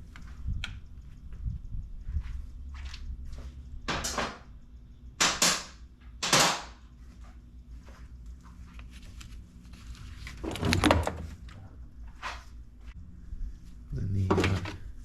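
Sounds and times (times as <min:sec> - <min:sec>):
tools knocking and clanking: 0:03.9 - 0:04.5.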